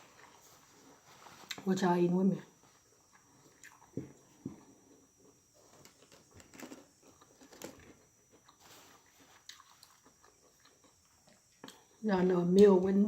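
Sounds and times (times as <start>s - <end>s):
person chewing food: 2.8s - 12.0s.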